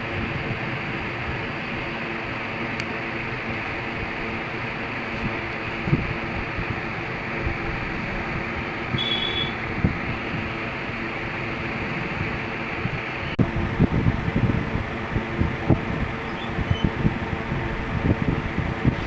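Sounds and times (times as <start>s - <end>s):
electric fan motor humming: 0.0s - 19.0s.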